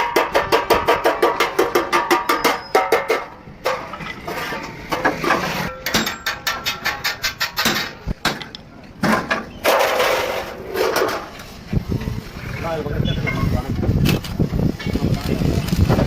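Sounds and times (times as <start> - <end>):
metal knocks and clanks: 0.0 - 11.3
rough workshop noise: 0.0 - 16.0.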